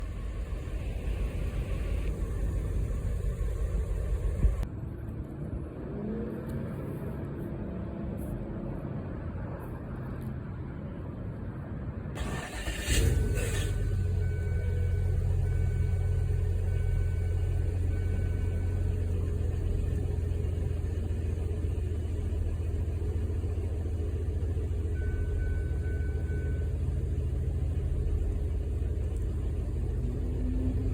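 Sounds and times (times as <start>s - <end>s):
car engine idling: 0.0s - 4.7s, 12.2s - 30.9s.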